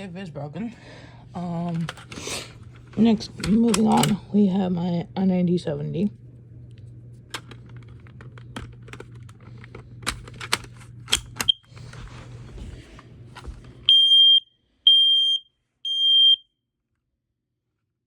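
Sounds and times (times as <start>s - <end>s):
smoke alarm high beeps: 13.9s - 16.4s.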